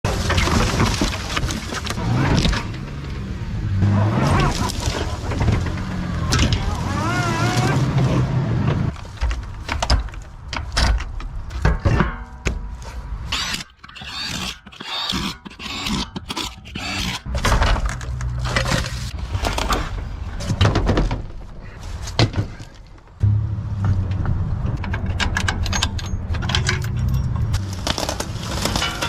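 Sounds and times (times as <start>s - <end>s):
knocks and scraping of tools on boat: 7.3s - 23.2s.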